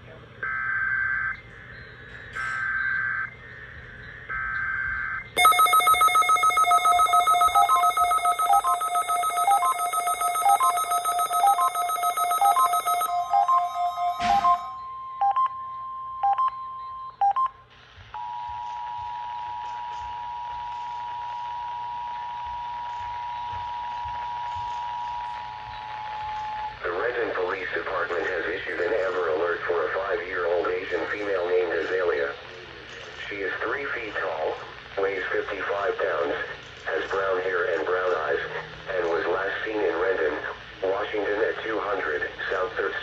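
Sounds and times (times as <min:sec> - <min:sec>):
buzzing alarm with beeps: 0:00.4 - 0:26.9
screechy data bursts: 0:04.4 - 0:14.7
two-tone attention signal: 0:05.4 - 0:17.6.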